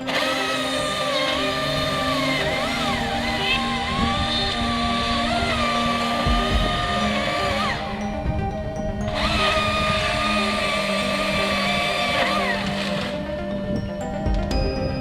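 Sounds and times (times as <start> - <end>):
background music: 0.0 - 15.0.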